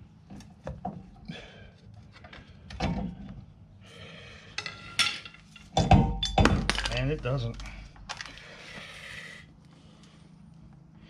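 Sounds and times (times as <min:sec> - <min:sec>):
loud metal clunk: 0:05.7 - 0:08.0.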